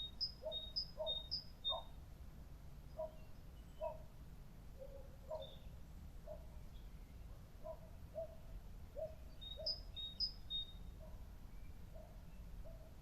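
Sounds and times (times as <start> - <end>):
birds chirping: 0.0 - 2.0, 2.9 - 4.1, 5.3 - 7.8, 9.0 - 12.5.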